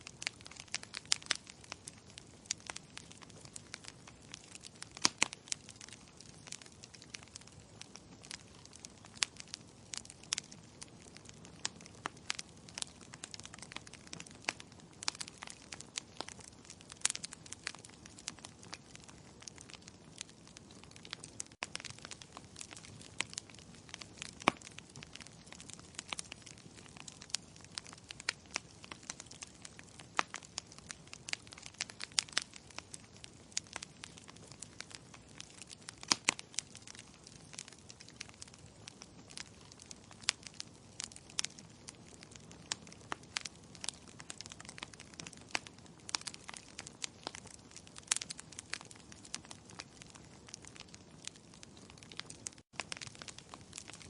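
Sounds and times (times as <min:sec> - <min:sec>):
soft steady hiss: 0:00.0 - 0:16.2
wood fire crackling: 0:00.0 - 0:54.0.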